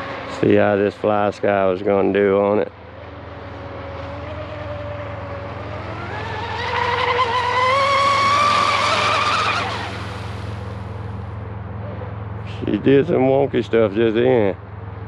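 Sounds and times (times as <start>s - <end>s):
model boat motor whining: 2.9s - 11.2s.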